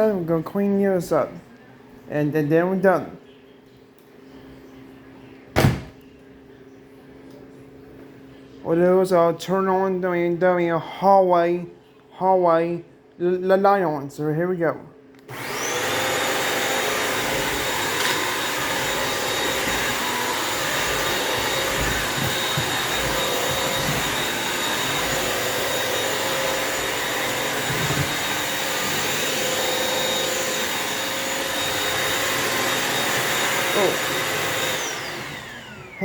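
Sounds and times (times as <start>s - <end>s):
vacuum mop motor whine: 15.2s - 36.0s.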